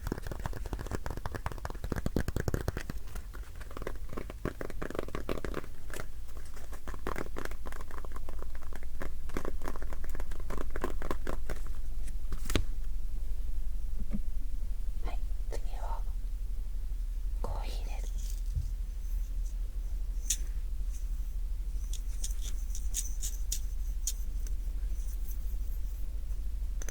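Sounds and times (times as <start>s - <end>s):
object crinkling in hands: 0.0s - 12.7s, 17.8s - 26.1s.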